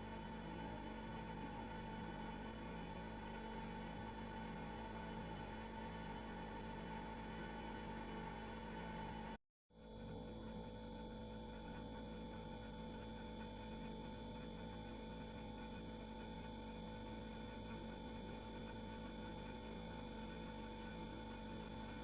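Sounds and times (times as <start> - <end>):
refrigerator humming: 0.0 - 9.4.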